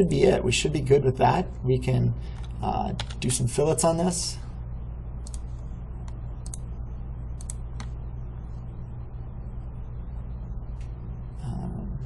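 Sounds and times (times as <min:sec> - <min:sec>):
steady low hum: 0:00.0 - 0:12.0
computer clicks: 0:02.4 - 0:03.3, 0:05.2 - 0:06.7, 0:07.3 - 0:08.0.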